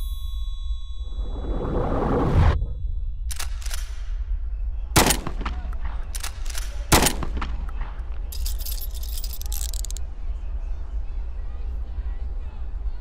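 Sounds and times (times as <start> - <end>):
steady low drone: 0.0 - 13.0
rattle of high clicks: 3.3 - 4.0, 6.1 - 6.8, 8.3 - 10.0
gunshots with ringing tail: 4.9 - 8.0.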